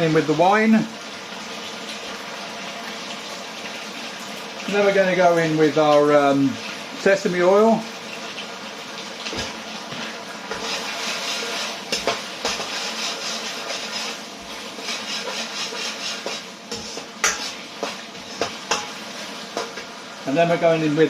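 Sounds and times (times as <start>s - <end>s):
sauce sizzling in a wok: 0.0s - 21.0s.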